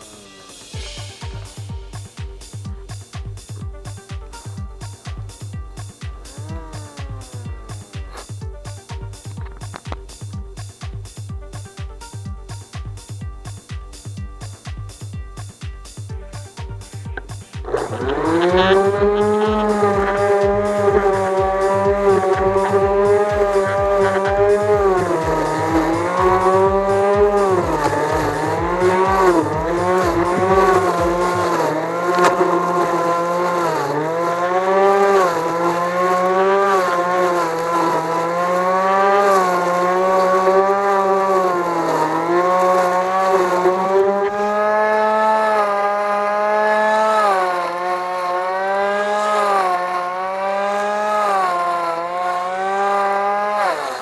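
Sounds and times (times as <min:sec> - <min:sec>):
electric motor whining at high speed: 0:06.2 - 0:08.8, 0:17.1 - 0:54.0.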